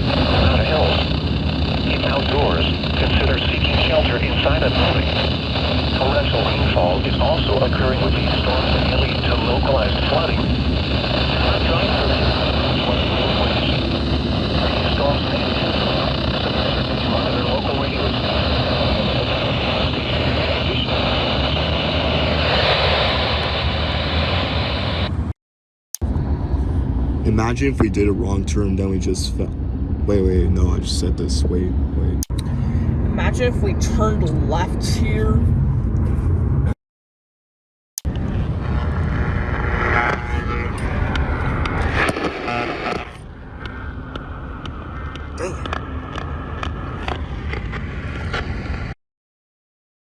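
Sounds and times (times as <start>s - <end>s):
car road and engine rumble: 26.0s - 36.7s, 38.0s - 48.9s.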